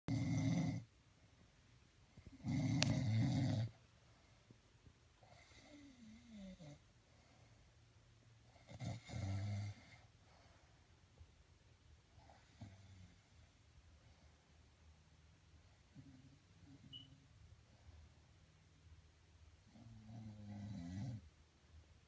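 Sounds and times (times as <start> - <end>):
person snoring: 0.1 - 0.9, 2.4 - 3.8.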